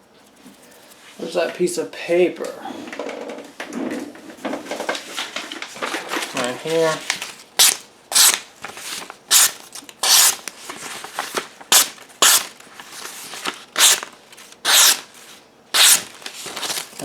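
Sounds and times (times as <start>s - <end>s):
knife slicing through paper: 6.4s - 17.0s.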